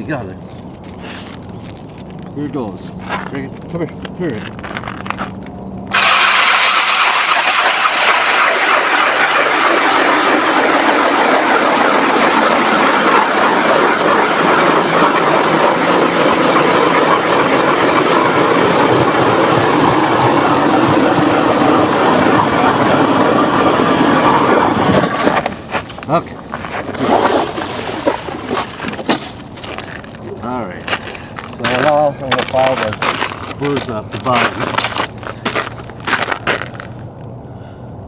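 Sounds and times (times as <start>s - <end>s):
electric ice auger grinding ice: 5.9s - 29.9s.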